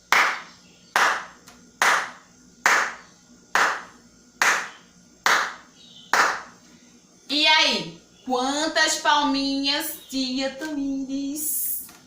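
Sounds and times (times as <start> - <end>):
woman clapping hands slowly: 0.1 - 6.5.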